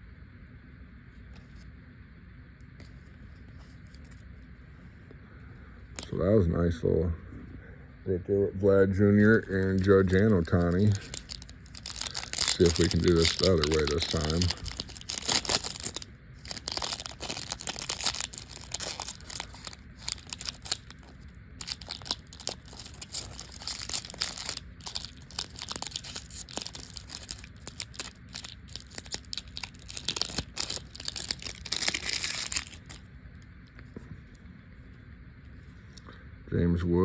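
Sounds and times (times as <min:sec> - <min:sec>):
faint handling noise: 0:02.6 - 0:05.2, 0:08.6 - 0:36.0
wrapper tearing and crinkling: 0:09.2 - 0:33.1.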